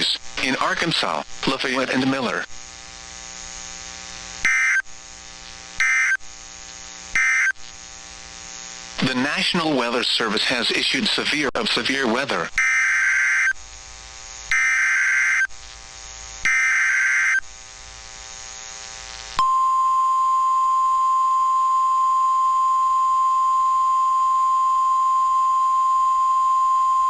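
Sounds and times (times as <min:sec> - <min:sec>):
warbling data screech: 0:04.4 - 0:04.8, 0:05.8 - 0:06.2, 0:07.2 - 0:07.6, 0:12.6 - 0:13.6, 0:14.5 - 0:15.5, 0:16.4 - 0:17.4
steady alarm tone: 0:04.4 - 0:04.9, 0:05.8 - 0:06.2, 0:07.1 - 0:07.6, 0:12.6 - 0:13.6, 0:14.4 - 0:15.6, 0:16.4 - 0:17.5, 0:19.4 - 0:27.0.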